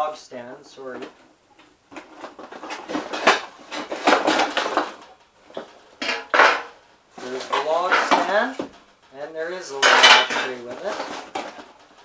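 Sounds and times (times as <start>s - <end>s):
metal parts clinking and rattling: 9.8s - 12.0s.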